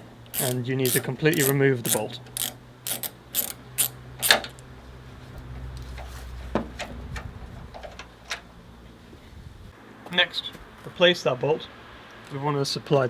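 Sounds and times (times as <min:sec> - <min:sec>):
ratchet wrench clicking: 0:00.3 - 0:04.6.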